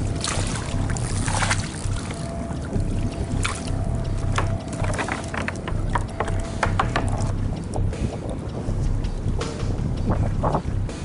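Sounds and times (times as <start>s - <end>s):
water splashing against kayak: 0.0s - 7.4s
wind rumble on microphone: 0.0s - 11.0s.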